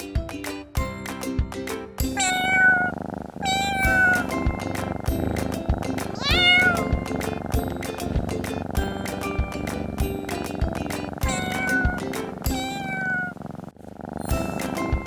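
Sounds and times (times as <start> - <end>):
cat meowing: 2.2 - 5.2, 6.1 - 7.4, 11.1 - 13.6
steady-beat music: 3.8 - 12.5, 14.3 - 15.0.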